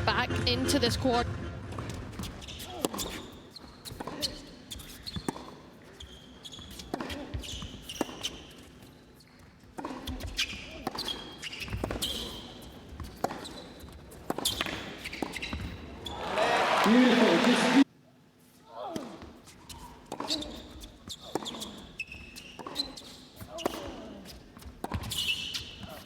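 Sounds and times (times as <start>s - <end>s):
ball bouncing: 0.0s - 4.2s, 24.6s - 26.0s
shoes squeaking on court: 1.0s - 16.4s, 18.8s - 26.0s
racket striking ball: 1.7s - 3.2s, 24.8s - 25.4s.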